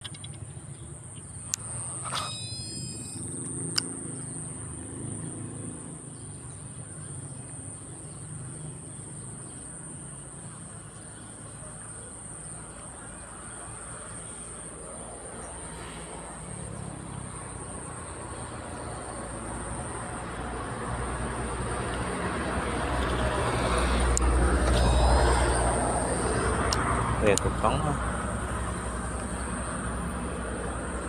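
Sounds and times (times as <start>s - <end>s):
high-pitched insect drone: 1.1s - 6.7s, 23.1s - 30.8s
sharp clicks: 1.4s - 4.0s, 24.0s - 27.5s
brief chirp: 1.6s - 3.3s, 24.6s - 26.2s.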